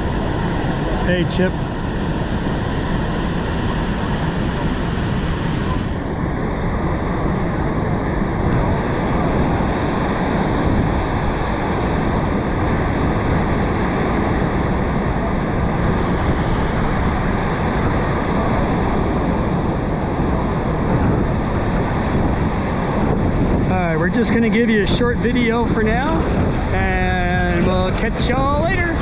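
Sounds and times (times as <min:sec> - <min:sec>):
waterfall roar: 0:00.0 - 0:29.0
wind buffeting microphone: 0:00.0 - 0:29.0
brief hiss: 0:15.8 - 0:17.4.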